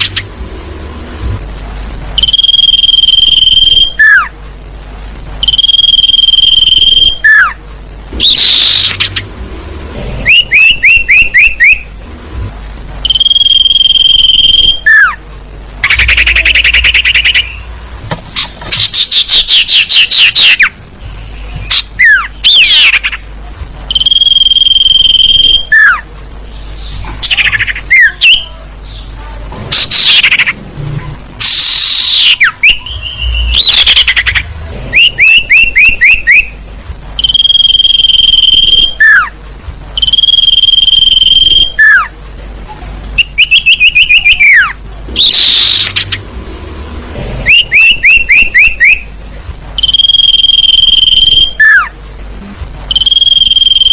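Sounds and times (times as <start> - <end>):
recorded bird whistles: 2.2 - 4.4, 5.4 - 7.6, 8.2 - 9.2, 10.2 - 12.0, 13.0 - 15.2, 15.8 - 17.7, 18.4 - 23.2, 23.9 - 26.0, 26.8 - 29.1, 29.7 - 30.6, 31.4 - 39.4, 40.0 - 42.1, 43.2 - 46.2, 47.4 - 49.2, 49.8 - 52.0, 52.9 - 53.9.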